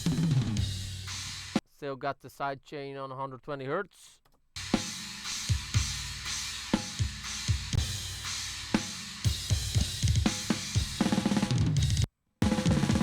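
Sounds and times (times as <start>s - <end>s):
drum kit playing a groove: 0.0s - 1.6s, 4.6s - 13.0s.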